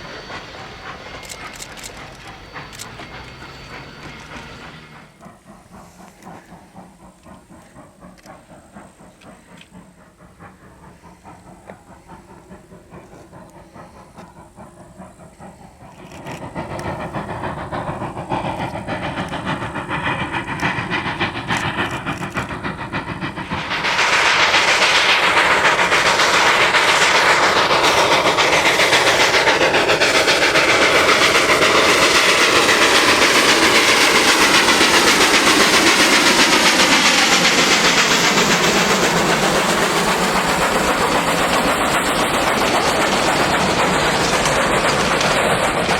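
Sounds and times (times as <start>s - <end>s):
steam locomotive passing: 0.0s - 45.9s
train cars clattering on rails: 0.0s - 45.9s.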